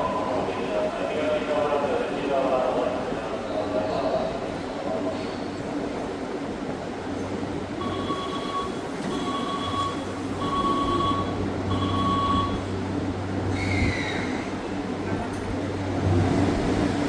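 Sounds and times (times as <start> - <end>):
electric train hum: 0.0 - 17.0
door-closing warning beeps: 7.8 - 12.7
air brake hiss with whistle: 13.5 - 14.5.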